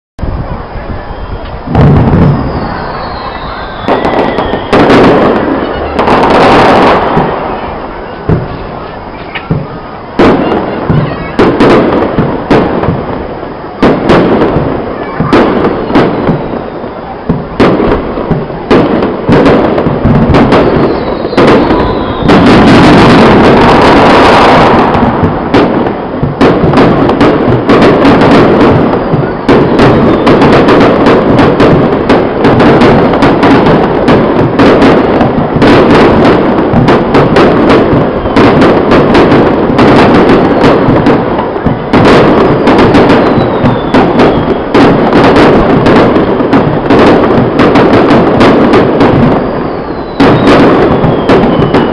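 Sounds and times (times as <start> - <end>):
fireworks bursts and crackles: 0.2 - 51.9.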